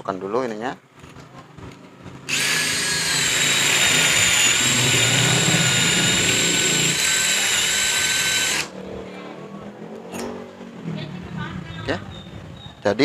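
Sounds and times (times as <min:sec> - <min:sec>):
cordless drill whining: 0:02.3 - 0:08.7.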